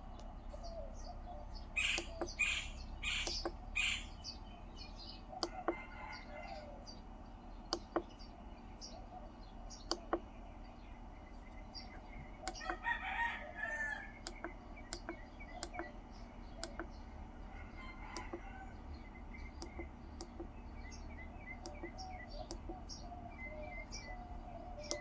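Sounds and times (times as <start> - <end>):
sharp clicks: 0.0 - 0.7, 1.8 - 4.2, 5.4 - 5.8, 7.6 - 8.3, 9.6 - 10.6, 11.4 - 13.0, 14.1 - 23.0, 24.6 - 25.0
faint bird chirps: 0.0 - 25.0
rooster crowing: 5.4 - 7.0, 12.6 - 14.2, 17.4 - 19.0.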